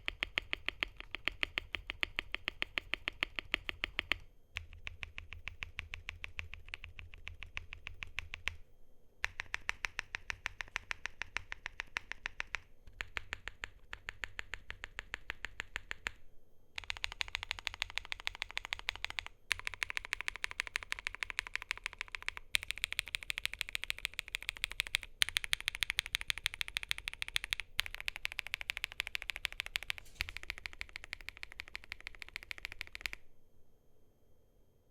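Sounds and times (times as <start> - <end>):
muted keyboard keystroke clacks: 0.0 - 8.6, 9.2 - 16.2, 16.8 - 33.2.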